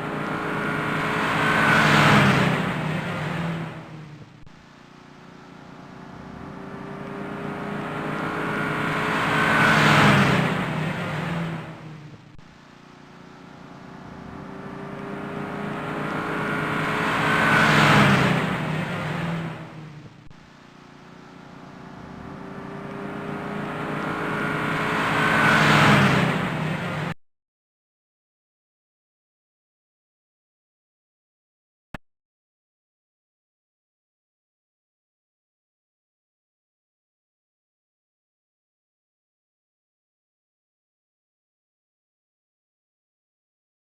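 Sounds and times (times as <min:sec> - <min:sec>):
car driving past: 0:00.0 - 0:04.3, 0:06.4 - 0:12.2, 0:13.4 - 0:20.1, 0:21.3 - 0:27.2.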